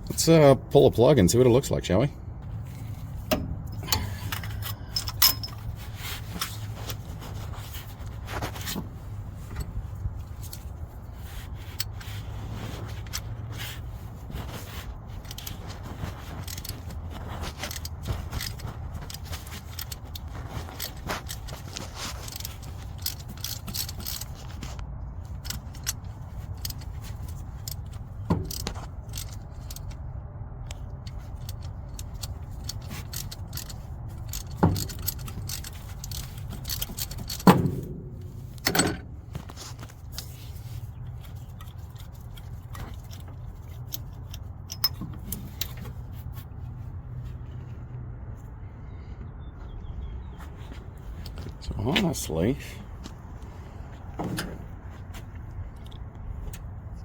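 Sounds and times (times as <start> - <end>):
steady low rumble: 0.0 - 57.0
metal hand tools clinking: 3.6 - 6.5.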